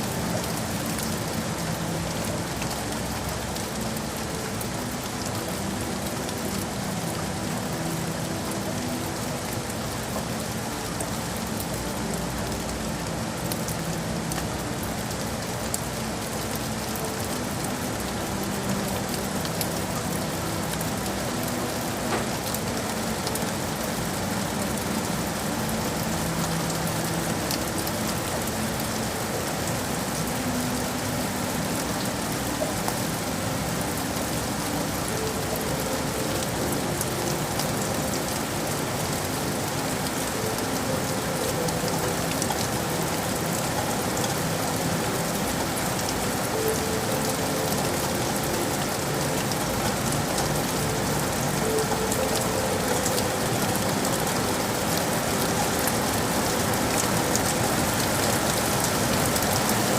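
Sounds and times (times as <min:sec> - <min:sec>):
rain on hard surfaces: 0:00.0 - 0:59.9.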